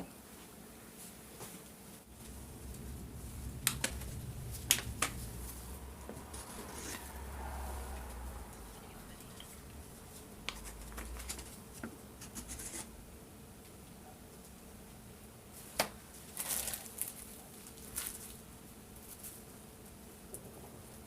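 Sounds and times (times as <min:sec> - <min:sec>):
scratchy rustles: 0:02.2 - 0:13.0.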